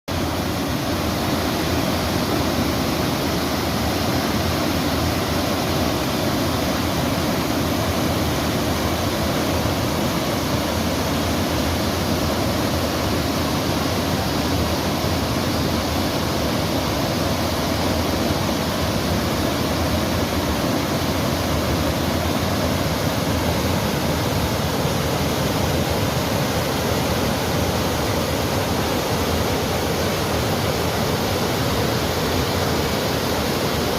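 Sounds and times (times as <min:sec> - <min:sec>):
water rushing: 0:00.1 - 0:33.9.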